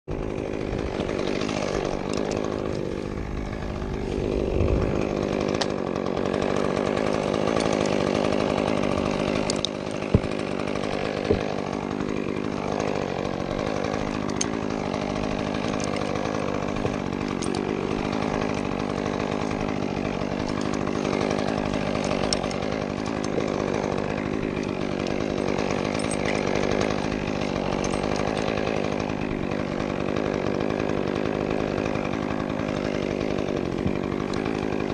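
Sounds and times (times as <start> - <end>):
chainsaw cutting wood: 0.0 - 34.9
sharp knocks: 10.0 - 10.5.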